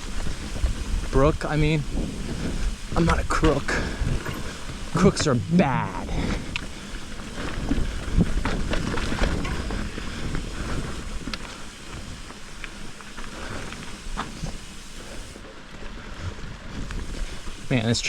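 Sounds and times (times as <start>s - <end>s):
wind on microphone: 0.0s - 12.3s
bike knocking and rattling over rocks: 0.0s - 18.0s
bike tyres on wet ground: 0.0s - 18.0s.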